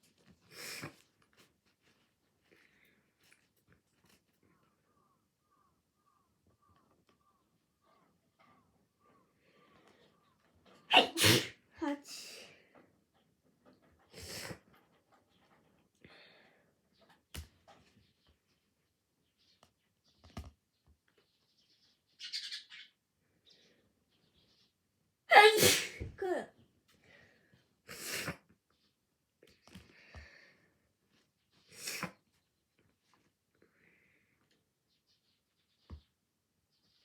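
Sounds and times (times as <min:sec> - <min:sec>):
soft breathy sniffs: 0:00.4 - 0:01.1, 0:27.1 - 0:28.5, 0:31.5 - 0:32.2
breathy sniffs: 0:31.6 - 0:32.2.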